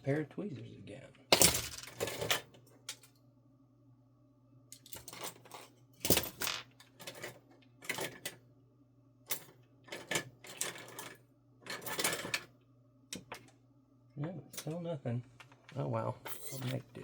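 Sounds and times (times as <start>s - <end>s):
faint steady hum: 0.0s - 17.0s
metal tools clattering: 16.3s - 16.9s.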